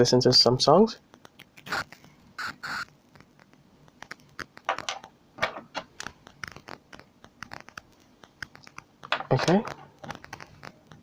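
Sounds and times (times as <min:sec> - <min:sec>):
hands handling small objects: 0:03.1 - 0:11.0.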